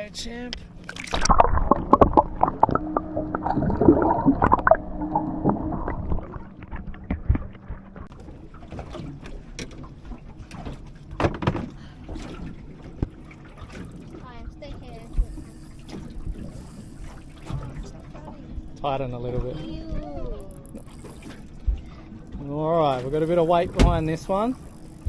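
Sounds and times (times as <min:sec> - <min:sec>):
water splashing and gurgling: 0:00.7 - 0:25.0
knocks and clunks on boat: 0:06.1 - 0:25.0.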